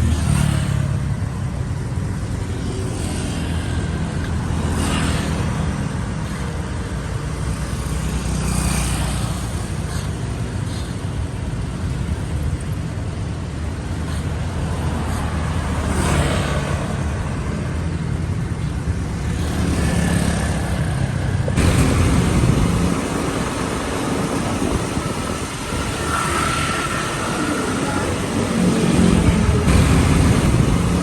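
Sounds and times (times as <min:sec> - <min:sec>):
cars passing: 0:00.0 - 0:31.0
low rumble of traffic: 0:00.0 - 0:31.0.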